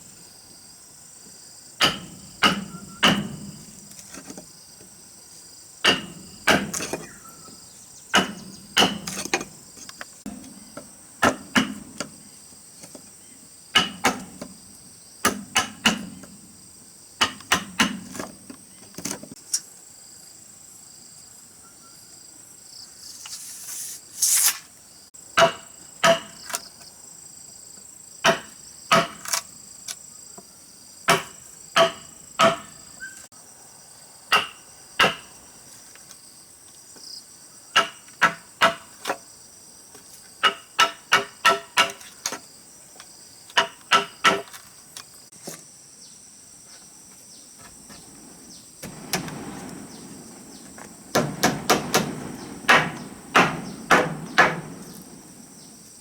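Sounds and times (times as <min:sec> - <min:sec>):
insects chirring: 0:00.0 - 0:56.0
tool striking wood: 0:01.8 - 0:04.4, 0:05.8 - 0:07.2, 0:08.1 - 0:09.5, 0:10.3 - 0:12.2, 0:13.8 - 0:14.6, 0:15.2 - 0:16.4, 0:17.2 - 0:18.3, 0:25.4 - 0:26.4, 0:28.3 - 0:29.3, 0:31.1 - 0:32.8, 0:34.3 - 0:35.3, 0:40.4 - 0:42.1, 0:43.6 - 0:44.5, 0:50.7 - 0:55.7
rasping scrape: 0:23.0 - 0:24.7.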